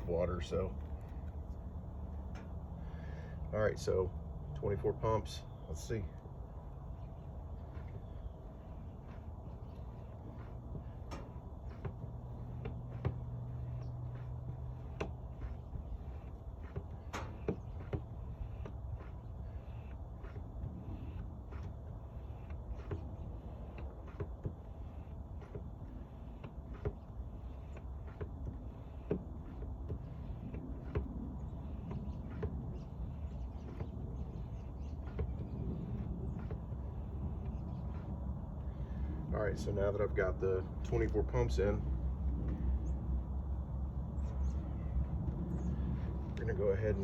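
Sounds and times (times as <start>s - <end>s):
low steady hum: 0.0s - 47.0s
hand pump strokes: 6.9s - 42.8s.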